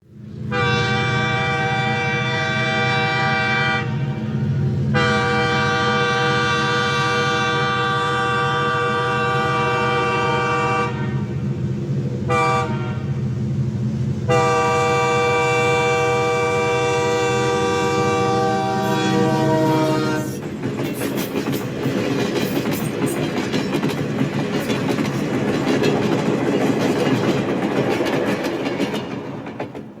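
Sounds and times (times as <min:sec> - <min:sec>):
locomotive engine rumble: 0:00.1 - 0:30.0
locomotive horn blasts: 0:00.5 - 0:11.4, 0:12.3 - 0:13.2, 0:14.3 - 0:20.4
train wheels clattering over rail joints: 0:20.0 - 0:30.0.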